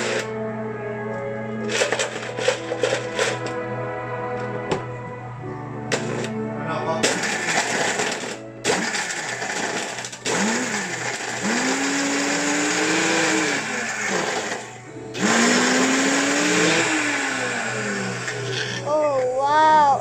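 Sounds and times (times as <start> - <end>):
blender crushing ice: 0.0 - 0.3, 1.6 - 3.6, 7.0 - 18.9.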